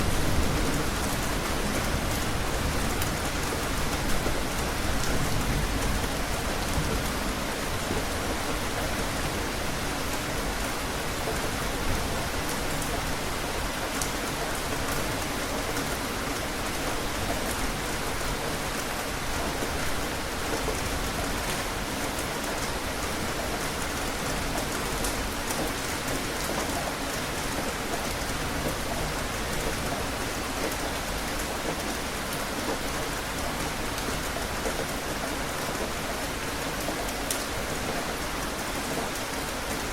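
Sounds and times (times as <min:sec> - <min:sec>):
rain pattering on surfaces: 0:00.0 - 0:39.9.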